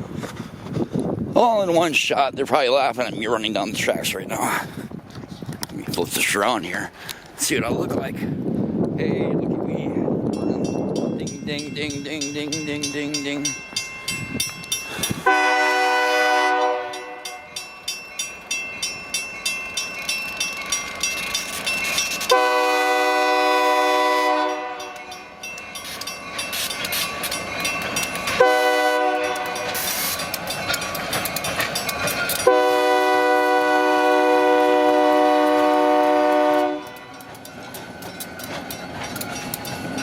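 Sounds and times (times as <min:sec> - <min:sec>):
crossing signal bell clanging: 0:10.2 - 0:40.0
locomotive air horn blasts: 0:15.2 - 0:17.4, 0:22.3 - 0:25.2, 0:28.4 - 0:29.9, 0:32.4 - 0:37.1.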